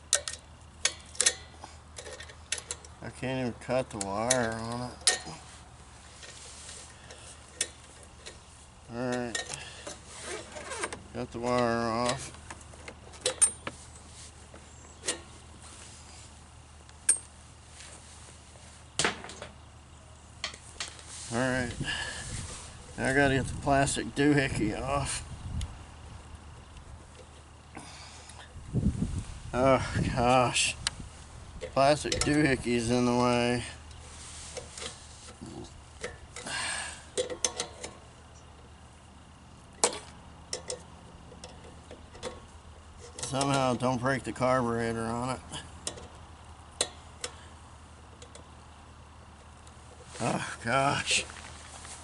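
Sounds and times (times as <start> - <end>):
faint steady hum: 0.0 - 52.0
hand tools clicking and tapping: 0.1 - 3.0, 3.9 - 5.4, 33.9 - 38.0, 39.8 - 43.6, 46.8 - 47.4, 48.1 - 48.5.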